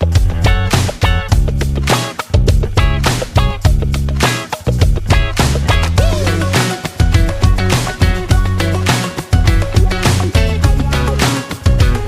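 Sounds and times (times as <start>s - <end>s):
upbeat guitar music with beat: 0.0s - 12.0s.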